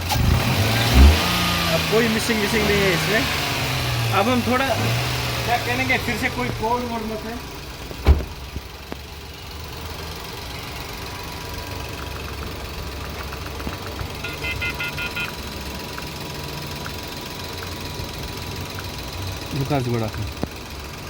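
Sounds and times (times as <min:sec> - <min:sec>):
car engine idling: 0:00.0 - 0:21.0
short high electronic beeps: 0:14.2 - 0:15.3.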